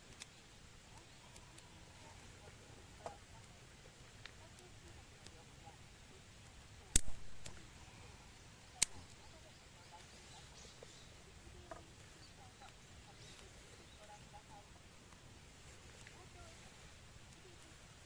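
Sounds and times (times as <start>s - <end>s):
wood fire crackling: 0.0s - 18.0s
faint bird chirps: 7.5s - 14.9s.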